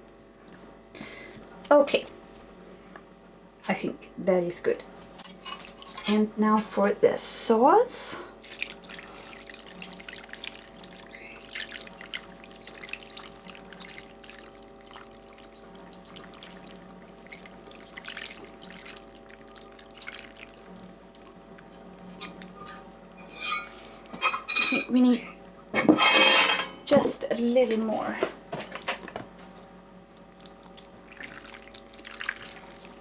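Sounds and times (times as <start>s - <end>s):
faint drips: 8.2s - 21.7s, 30.1s - 33.0s
sauce pouring and trickling: 8.3s - 21.7s, 30.2s - 33.0s.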